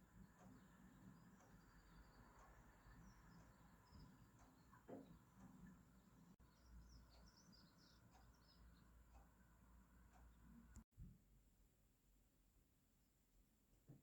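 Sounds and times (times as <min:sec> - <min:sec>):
high bird chirps: 0:06.4 - 0:08.9.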